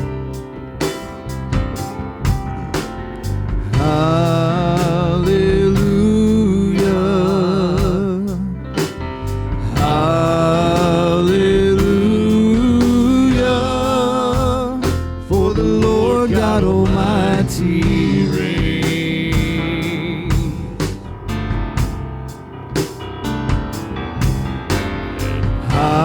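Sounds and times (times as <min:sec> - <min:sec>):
guitar: 0:00.0 - 0:07.9
drums: 0:00.0 - 0:26.0
worship band music: 0:00.0 - 0:26.0.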